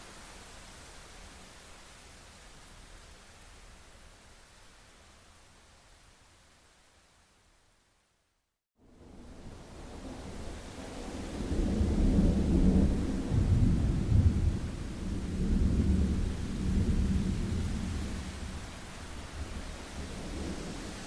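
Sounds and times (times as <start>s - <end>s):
rain hiss: 0.0s - 8.2s, 8.8s - 21.0s
thunder rumbling: 11.3s - 18.6s.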